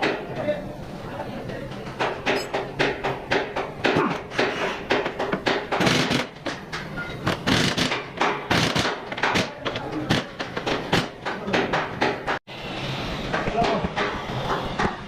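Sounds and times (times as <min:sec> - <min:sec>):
metal knocks and clanks: 0:01.8 - 0:12.4.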